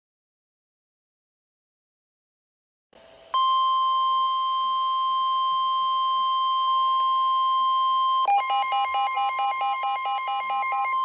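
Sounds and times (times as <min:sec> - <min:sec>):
pulsing two-pitch beep: 0:03.4 - 0:11.0
steady emergency alert tone: 0:03.4 - 0:11.0.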